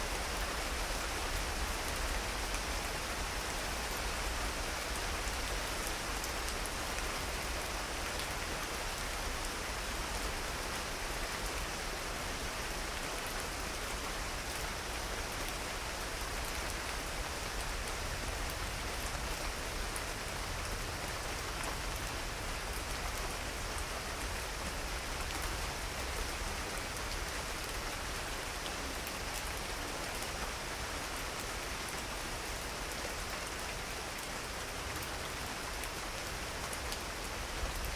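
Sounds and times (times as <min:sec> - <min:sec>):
steady rain hiss: 0:00.0 - 0:37.9.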